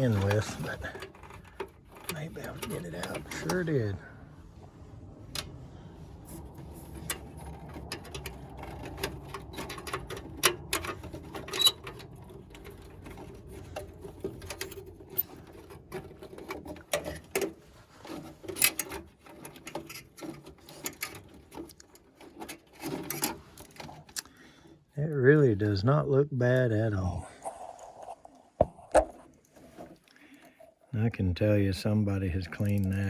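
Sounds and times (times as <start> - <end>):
metallic clatter of hand tools: 0.0 - 4.0, 6.8 - 24.3.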